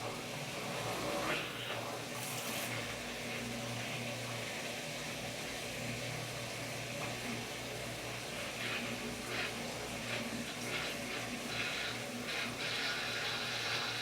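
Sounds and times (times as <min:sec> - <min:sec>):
washing machine humming: 0:00.0 - 0:14.0.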